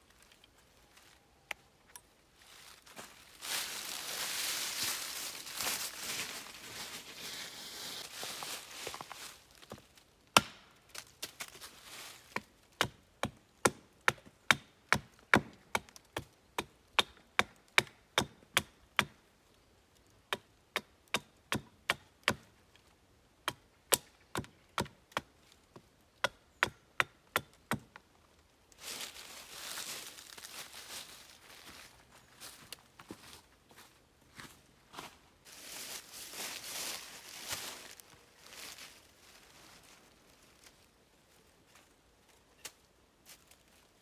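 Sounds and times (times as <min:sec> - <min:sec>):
rustling: 0:02.0 - 0:09.7, 0:28.8 - 0:33.3, 0:35.5 - 0:41.0
axe chopping wood: 0:10.4 - 0:10.7, 0:12.8 - 0:19.2, 0:23.4 - 0:25.3, 0:26.2 - 0:27.9.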